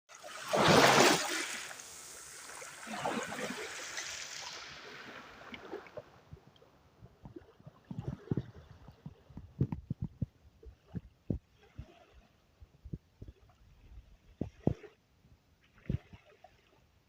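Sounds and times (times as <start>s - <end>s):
sea water rushing in: 0.1s - 6.4s.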